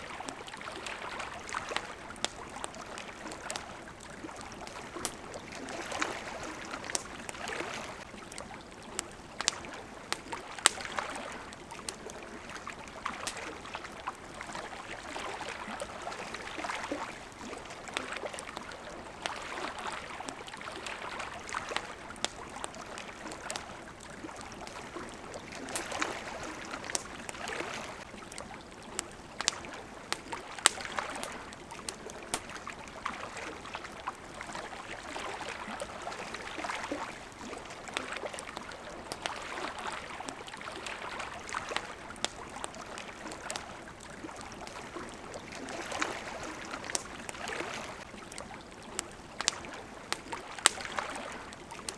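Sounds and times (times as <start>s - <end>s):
campfire crackling: 0.0s - 51.9s
water lapping at riverbank: 0.0s - 51.9s.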